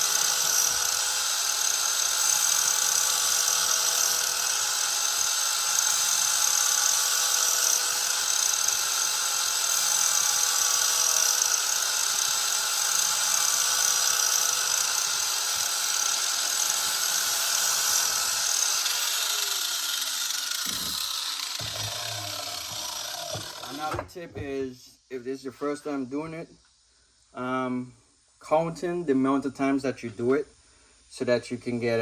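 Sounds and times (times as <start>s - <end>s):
grinder disc spinning down: 0.0s - 24.0s
angle grinder grinding metal: 0.0s - 24.4s.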